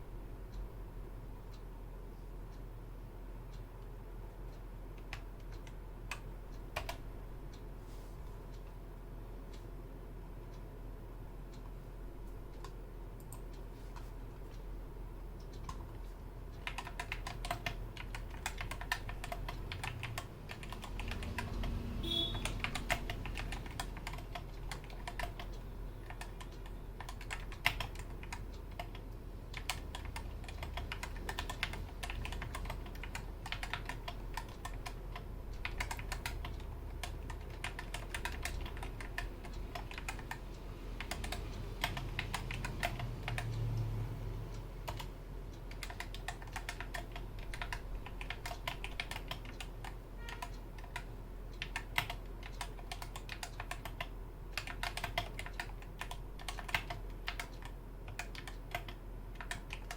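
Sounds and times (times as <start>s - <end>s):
low steady hum: 0.0s - 59.9s
mechanical keyboard typing: 5.0s - 7.0s, 15.4s - 43.9s, 44.8s - 59.9s.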